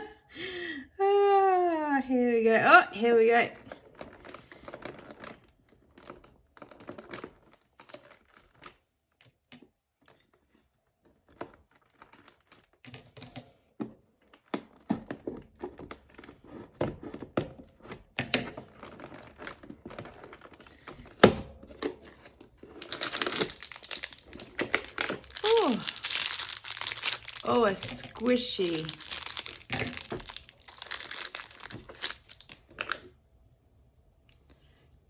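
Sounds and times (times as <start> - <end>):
packaging crinkling: 3.6 - 8.9, 11.0 - 12.8, 14.3 - 33.1
cardboard scratching and tearing: 22.0 - 32.4.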